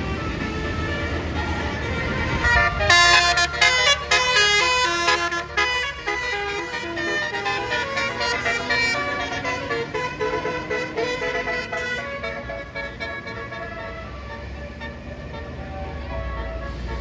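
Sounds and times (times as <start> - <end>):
bus engine rumble: 0.0 - 17.0
multi-tone air horn melody: 0.0 - 17.0.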